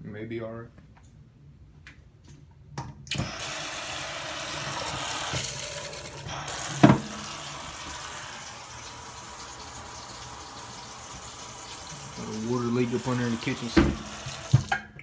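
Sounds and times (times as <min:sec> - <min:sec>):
water running into sink: 0:03.1 - 0:14.9.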